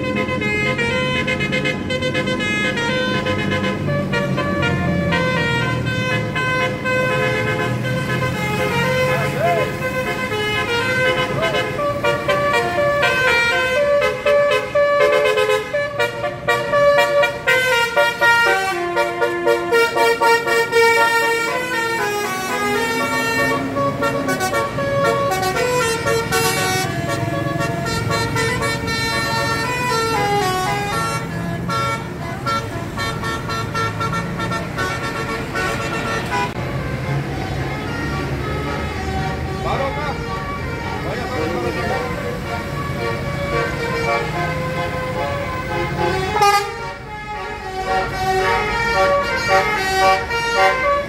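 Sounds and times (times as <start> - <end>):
bus engine: 0.0 - 51.0
melodic bus air horns: 0.0 - 51.0.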